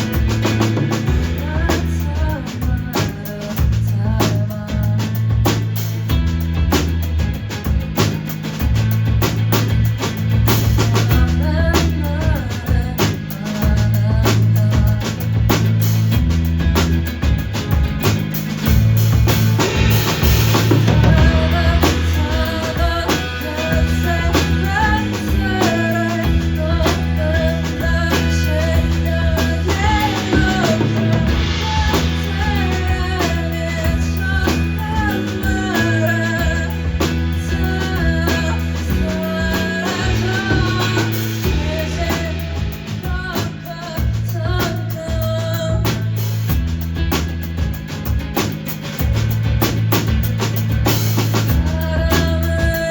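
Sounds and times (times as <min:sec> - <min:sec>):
acoustic guitar: 0:00.0 - 0:52.9
drum kit beat: 0:00.0 - 0:52.9
low bass notes: 0:00.0 - 0:52.9
person singing: 0:20.7 - 0:46.2, 0:51.4 - 0:52.9.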